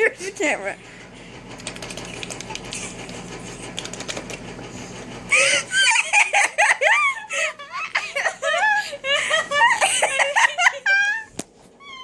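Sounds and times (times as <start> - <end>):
high-pitched giggling: 5.3 - 11.3.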